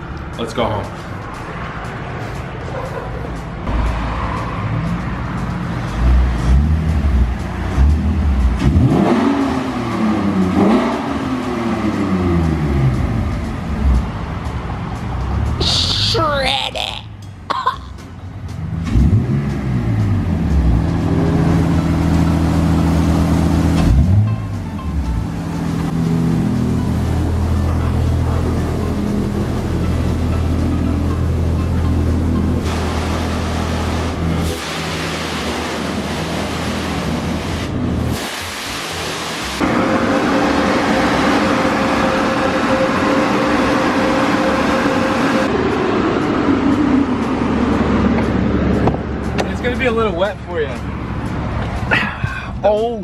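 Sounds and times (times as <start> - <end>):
car engine accelerating: 1.1 - 15.9, 18.0 - 52.8
loud rushing noise: 3.4 - 16.2, 25.3 - 51.9.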